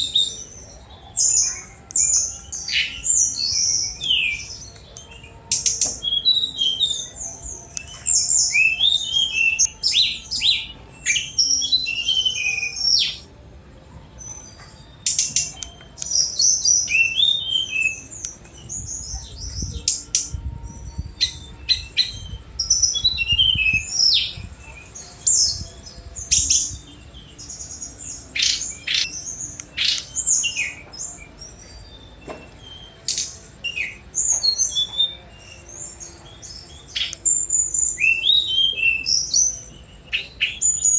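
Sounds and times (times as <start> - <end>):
bird singing fast varied song: 0.0 - 13.4, 14.2 - 40.9.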